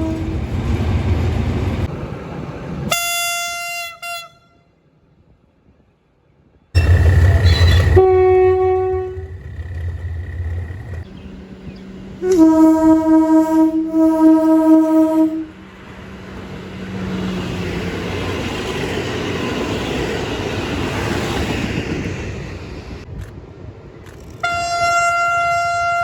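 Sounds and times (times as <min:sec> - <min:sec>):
train horn blasts: 0:00.0 - 0:00.4, 0:02.9 - 0:04.8, 0:06.8 - 0:17.3, 0:24.4 - 0:26.0
train wheels rumbling on rails: 0:00.0 - 0:02.9, 0:06.8 - 0:25.4
faint engine hum: 0:06.8 - 0:17.6.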